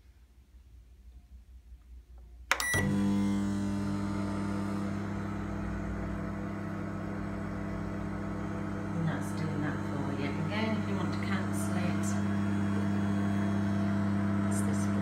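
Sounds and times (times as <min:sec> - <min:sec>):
microwave click: 0:02.5 - 0:03.1
microwave humming: 0:02.5 - 0:15.0.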